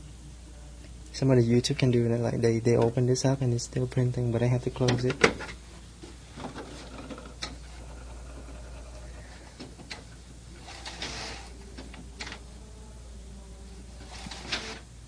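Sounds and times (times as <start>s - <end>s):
faint motor whine: 0.0s - 15.0s
printer carriage moving: 6.3s - 12.5s, 14.0s - 14.9s
sharp printer clicks: 10.6s - 11.5s.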